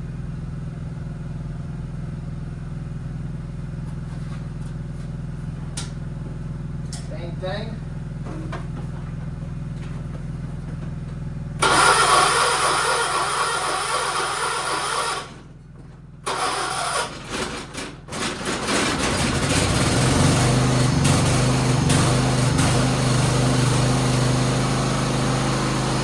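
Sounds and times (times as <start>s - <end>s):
tractor engine running: 0.0s - 26.0s
starter cranking engine: 11.6s - 15.5s, 16.2s - 26.0s.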